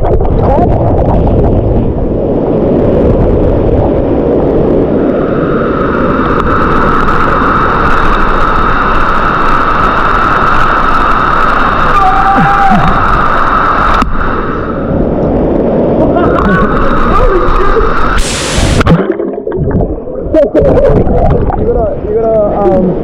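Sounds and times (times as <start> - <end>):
waterfall rushing: 5.7 - 14.8, 16.0 - 20.2
high hiss-like tone: 16.4 - 19.0.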